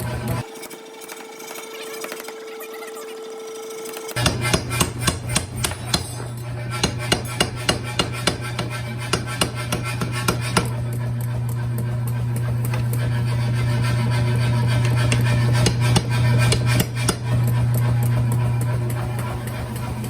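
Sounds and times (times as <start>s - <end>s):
hammer striking steel: 4.2s - 11.2s, 12.6s - 18.0s
steady low hum: 4.2s - 20.0s.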